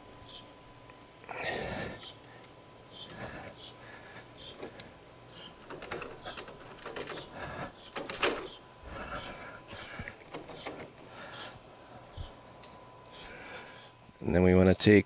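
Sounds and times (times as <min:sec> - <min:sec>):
door lock hardware clicking: 0:05.6 - 0:07.3, 0:07.9 - 0:08.6, 0:10.2 - 0:11.0.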